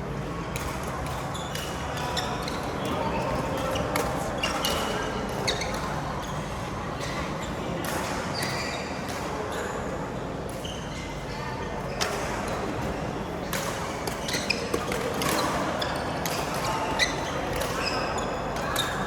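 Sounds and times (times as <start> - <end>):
shoes squeaking on court floor: 0.6 - 10.0, 13.8 - 19.0.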